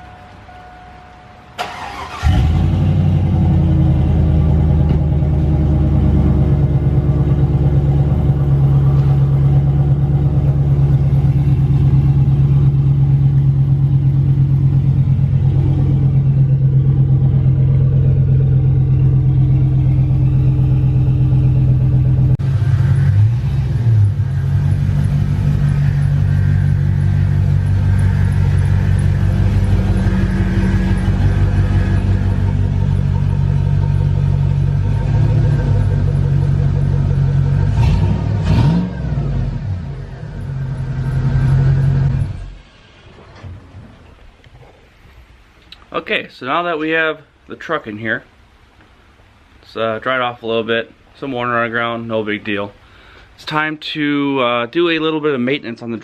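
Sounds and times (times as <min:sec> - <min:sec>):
engine starting and idling: 0:01.6 - 0:05.4.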